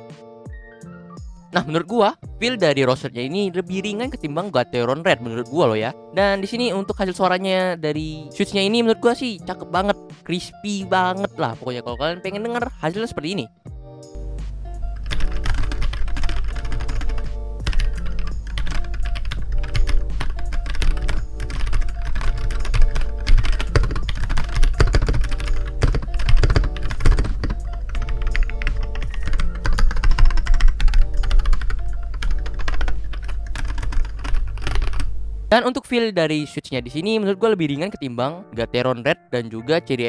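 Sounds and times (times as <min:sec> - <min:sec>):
background music: 0:00.0 - 0:40.0
mechanical keyboard typing: 0:14.5 - 0:35.1.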